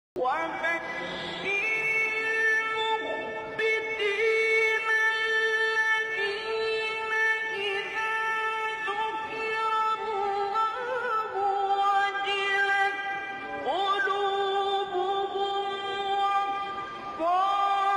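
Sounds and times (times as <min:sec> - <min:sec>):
singing voice: 0:00.2 - 0:17.9.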